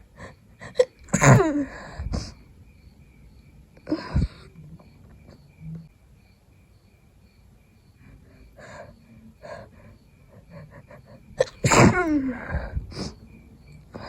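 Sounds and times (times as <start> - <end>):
person sneezing loudly: 1.1 - 2.3, 11.4 - 13.2.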